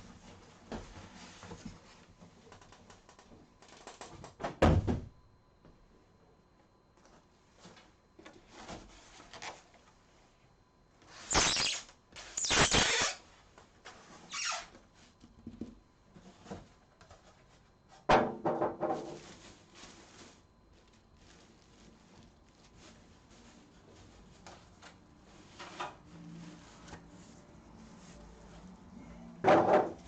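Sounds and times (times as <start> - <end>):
packaging rustling and scraping: 19.0 - 28.6.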